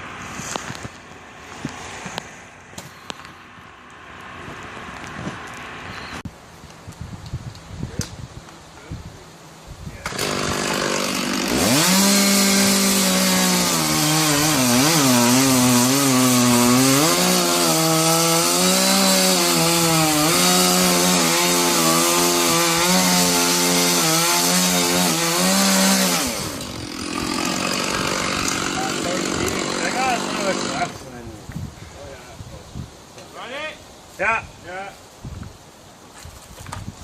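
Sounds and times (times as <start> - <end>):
chainsaw cutting wood: 10.0 - 31.0.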